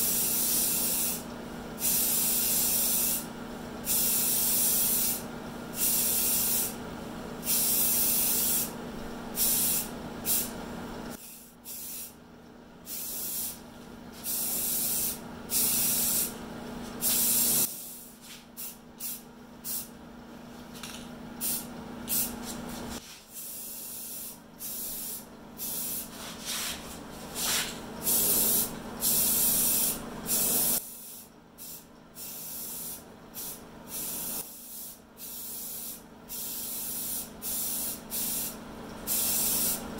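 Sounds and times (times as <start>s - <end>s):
spray gun hissing: 0.0s - 1.2s, 1.8s - 3.2s, 3.9s - 5.2s, 9.4s - 10.5s, 11.2s - 12.1s, 12.9s - 13.6s, 14.2s - 16.4s, 17.0s - 19.8s, 23.4s - 26.6s, 27.3s - 39.9s
steady low hum: 0.0s - 39.9s.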